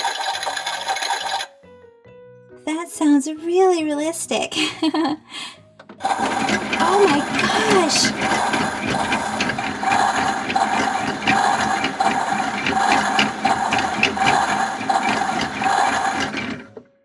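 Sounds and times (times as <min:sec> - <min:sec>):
toy washing machine churning: 0:00.0 - 0:01.5, 0:06.0 - 0:16.8.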